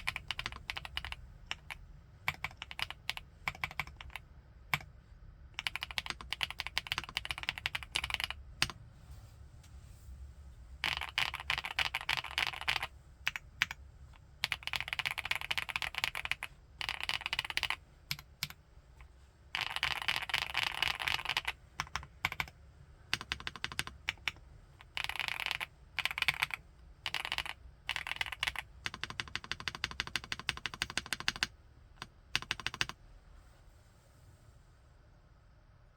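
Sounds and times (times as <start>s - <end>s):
mechanical keyboard typing: 0.0s - 4.9s, 5.6s - 8.8s, 10.8s - 13.8s, 14.4s - 18.6s, 19.6s - 33.0s.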